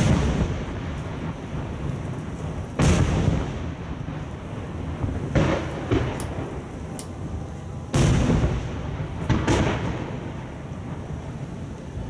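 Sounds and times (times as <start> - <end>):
firework shells booming: 2.8 - 7.3, 7.9 - 10.4.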